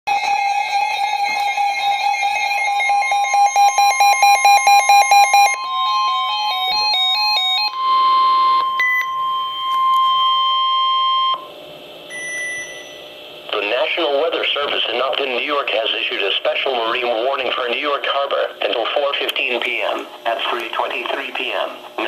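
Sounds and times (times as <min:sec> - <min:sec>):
steady electronic alert tone: 0:12.1 - 0:13.1.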